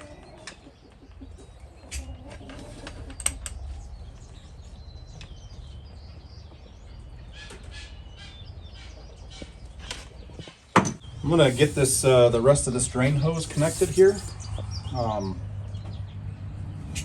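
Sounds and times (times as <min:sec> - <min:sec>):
birds chirping: 0:00.0 - 0:17.0
low steady rumble: 0:02.9 - 0:09.8.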